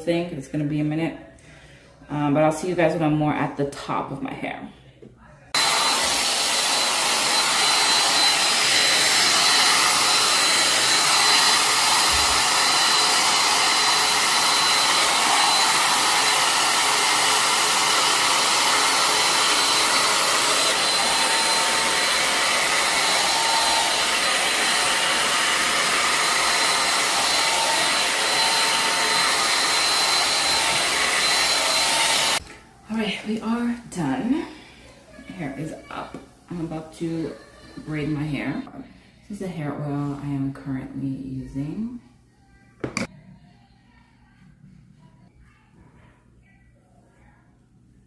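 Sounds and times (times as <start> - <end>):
blow dryer running: 5.6 - 34.4.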